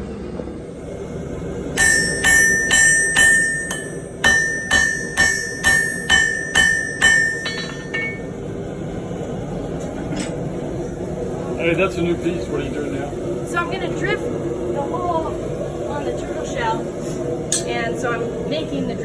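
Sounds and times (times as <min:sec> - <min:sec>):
hammer striking steel on anvil: 0:01.8 - 0:08.3.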